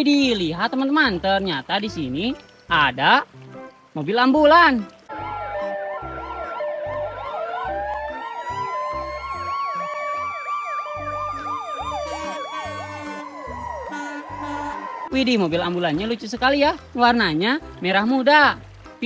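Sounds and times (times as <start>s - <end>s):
background music with low beat: 0.0s - 19.0s
ambulance siren yelp and wail: 5.0s - 16.2s.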